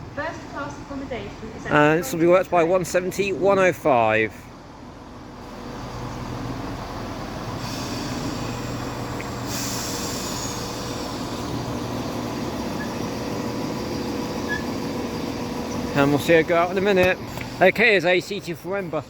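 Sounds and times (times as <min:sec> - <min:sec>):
diesel train engines humming: 0:00.0 - 0:19.0
high hiss: 0:07.6 - 0:11.6.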